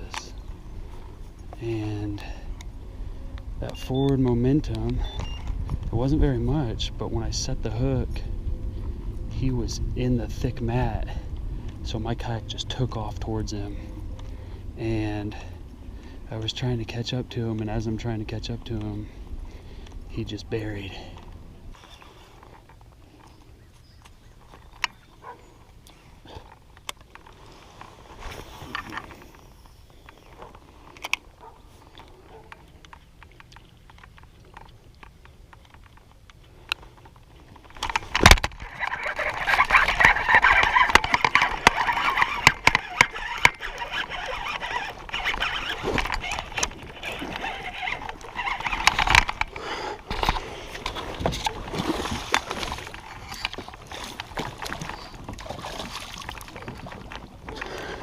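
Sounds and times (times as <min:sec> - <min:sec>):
water splashing around kayak: 0:17.6 - 0:58.0.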